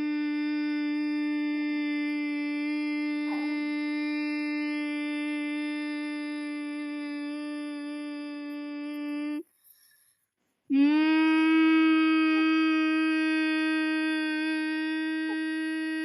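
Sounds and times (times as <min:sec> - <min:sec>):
person humming a droning note: 0:00.0 - 0:09.5, 0:10.7 - 0:16.0.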